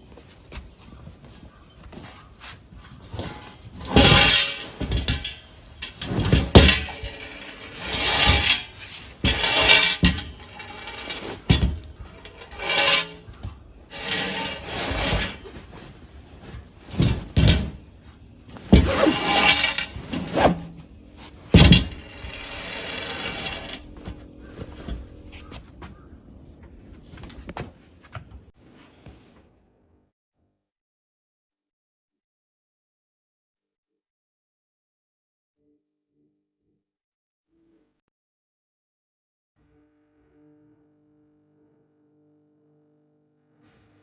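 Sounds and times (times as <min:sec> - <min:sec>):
metal parts clanking and scraping: 0:03.0 - 0:25.7.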